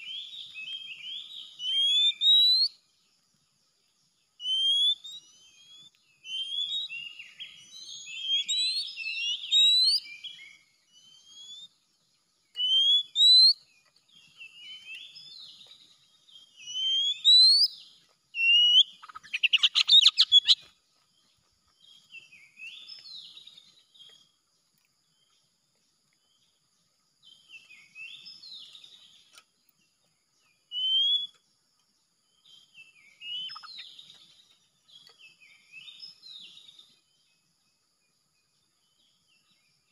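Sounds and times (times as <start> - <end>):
bird singing whistles and chirps: 0.0 - 2.9, 4.4 - 11.8, 12.5 - 20.7, 21.8 - 24.3, 27.2 - 29.4, 30.4 - 31.4, 32.3 - 37.1.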